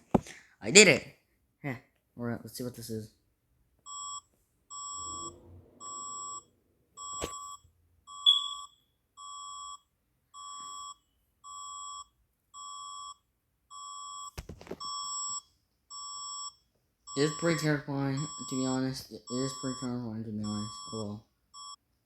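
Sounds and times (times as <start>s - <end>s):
electronic alarm beeps: 3.9s - 9.8s, 10.4s - 16.5s, 17.1s - 21.8s
loud high chirp: 8.2s - 8.7s.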